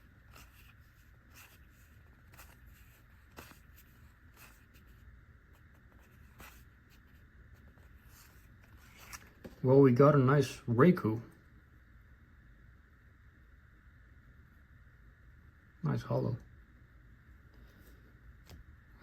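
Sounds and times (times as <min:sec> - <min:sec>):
trading cards flipped through hands: 0:00.3 - 0:04.8, 0:08.1 - 0:09.6.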